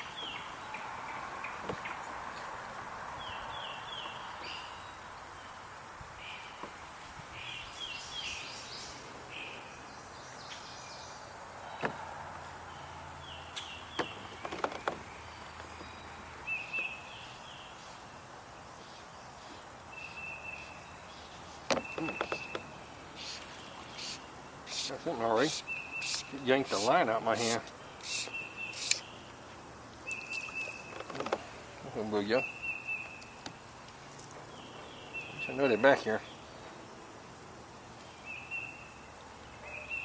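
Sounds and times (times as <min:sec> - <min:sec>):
high insect drone: 0:00.0 - 0:40.0
bird chirping: 0:07.3 - 0:12.0, 0:12.7 - 0:18.0, 0:18.8 - 0:29.4, 0:30.0 - 0:33.7, 0:34.4 - 0:36.7, 0:37.8 - 0:40.0
sharp clicks and knocks: 0:13.9 - 0:15.9, 0:21.7 - 0:22.7, 0:30.9 - 0:31.4.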